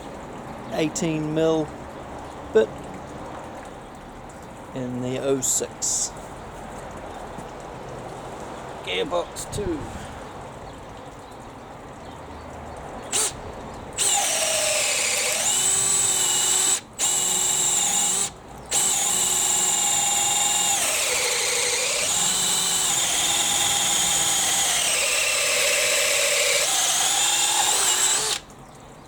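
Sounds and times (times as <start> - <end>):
cordless drill motor whining: 13.1 - 13.4, 14.0 - 28.5.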